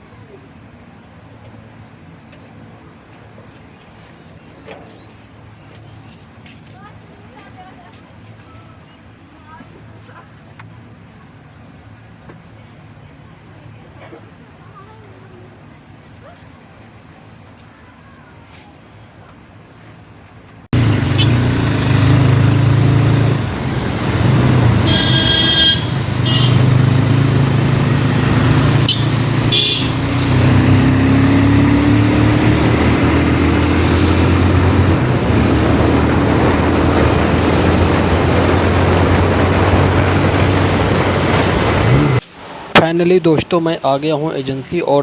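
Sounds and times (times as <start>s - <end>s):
wind and road noise: 19.3s - 45.0s
vehicle horn: 20.8s - 41.3s
motorcycle engine running: 20.8s - 42.2s.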